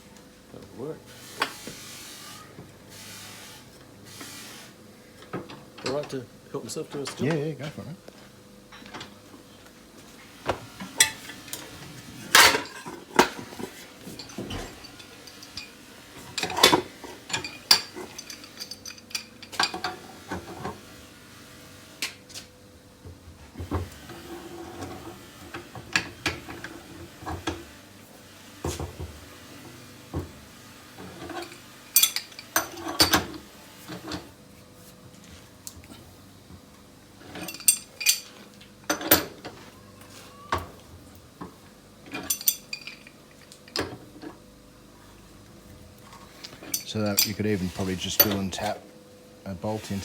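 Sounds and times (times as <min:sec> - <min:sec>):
metal tools clinking on workbench: 0:12.4 - 0:13.5, 0:16.3 - 0:20.0, 0:31.2 - 0:33.3, 0:37.3 - 0:39.3, 0:42.1 - 0:43.9, 0:46.5 - 0:47.5.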